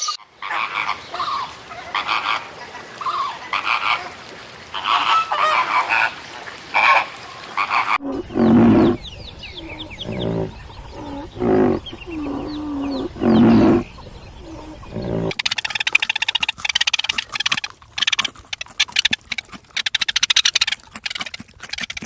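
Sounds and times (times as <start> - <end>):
loud drawn-out animal calls: 6.8 - 22.0
short choppy animal calls: 14.6 - 22.0.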